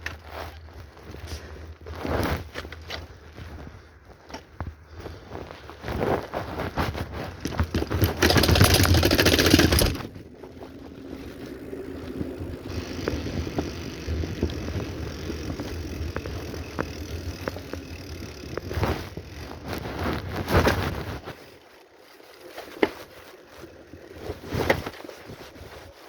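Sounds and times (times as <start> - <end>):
bicycle tyres rolling: 0.0 - 26.0
bicycle parts rattling: 6.9 - 25.9.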